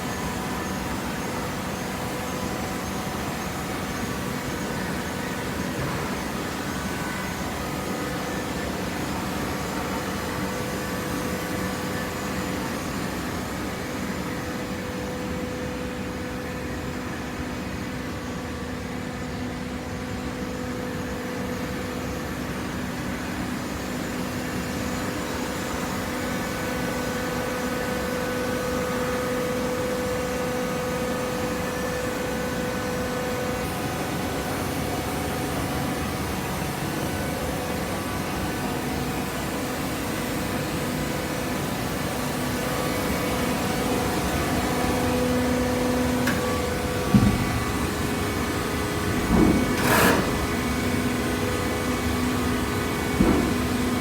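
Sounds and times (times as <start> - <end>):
hydraulic baler motor humming: 41.5 - 54.0.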